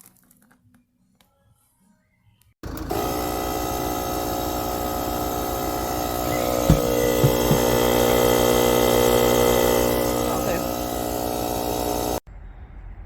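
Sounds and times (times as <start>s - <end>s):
compressor humming: 2.6s - 12.2s
short knocks: 6.6s - 7.9s.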